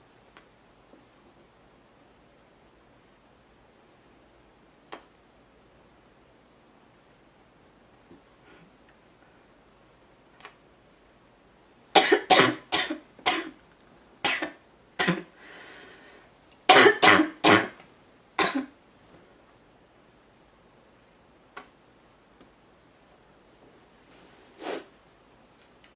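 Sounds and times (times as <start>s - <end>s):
woman coughing: 12.0s - 13.5s, 14.3s - 15.3s, 16.7s - 17.8s, 18.4s - 18.7s
in-breath: 15.4s - 16.3s.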